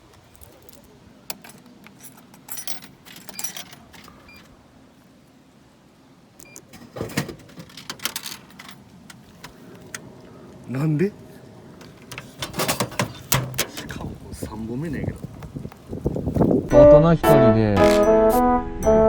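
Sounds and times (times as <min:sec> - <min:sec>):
light metallic jingling: 0:00.4 - 0:04.5.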